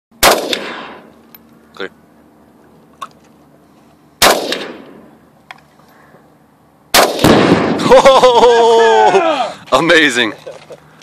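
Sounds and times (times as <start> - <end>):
rifle shot echoing: 0.2 - 1.1, 4.2 - 5.1, 6.9 - 7.8
explosion with rolling rumble: 7.0 - 8.0.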